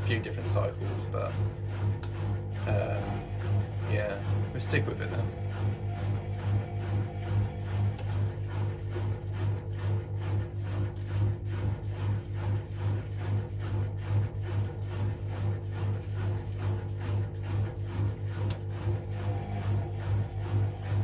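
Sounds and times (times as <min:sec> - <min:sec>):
drum rubbing: 0:00.0 - 0:09.2, 0:18.8 - 0:21.0
washing machine spinning: 0:00.0 - 0:21.0.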